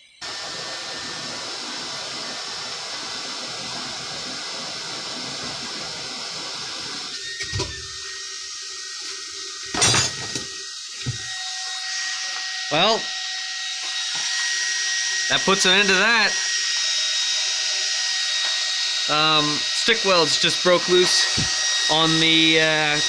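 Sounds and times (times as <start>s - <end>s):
fire crackling: 0.2s - 7.2s
forge fire roaring under air blast: 0.2s - 7.2s.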